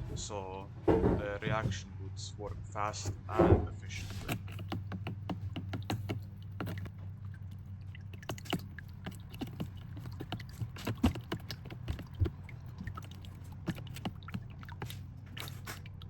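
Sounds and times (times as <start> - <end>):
small objects clicking and tapping: 4.1 - 16.0.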